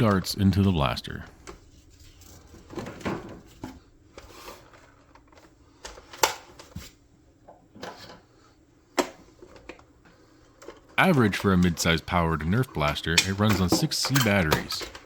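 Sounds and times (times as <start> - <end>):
plastic parts rustling: 9.4 - 15.0.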